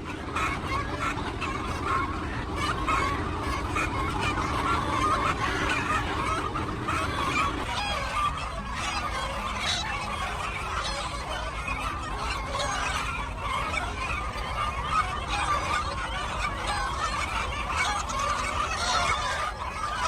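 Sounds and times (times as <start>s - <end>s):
chickens clucking and calling: 0.0s - 20.0s.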